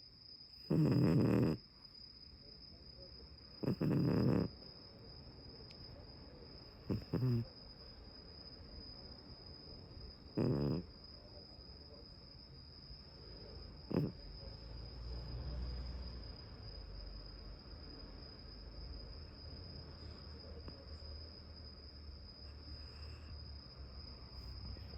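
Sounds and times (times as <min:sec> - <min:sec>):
cat snoring softly: 0:00.6 - 0:01.6, 0:03.6 - 0:04.5, 0:06.8 - 0:07.5, 0:10.3 - 0:10.9, 0:13.8 - 0:16.1, 0:22.5 - 0:23.3.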